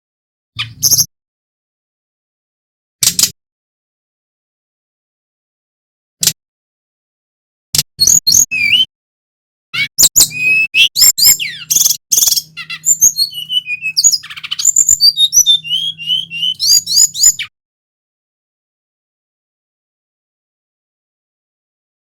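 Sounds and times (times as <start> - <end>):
bird chirping: 0.6 - 1.1, 8.0 - 8.9, 9.8 - 17.5
bird song whistles and trills: 0.6 - 1.1, 8.0 - 8.9, 9.8 - 17.5.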